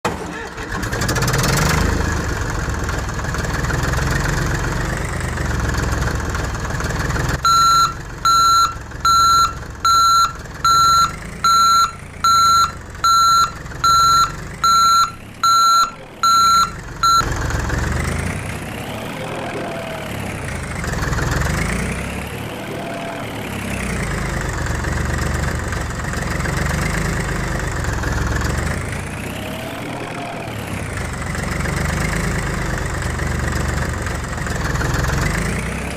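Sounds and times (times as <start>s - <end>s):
excavator engine running: 0.0s - 35.9s
reversing alarm beeping: 7.4s - 17.3s.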